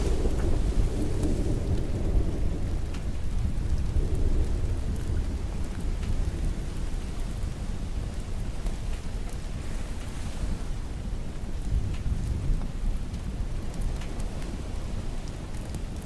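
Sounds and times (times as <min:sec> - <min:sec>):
rolling thunder: 0:00.0 - 0:09.9
raindrops ticking: 0:00.0 - 0:10.0, 0:11.1 - 0:16.0
steady rain: 0:00.0 - 0:16.0.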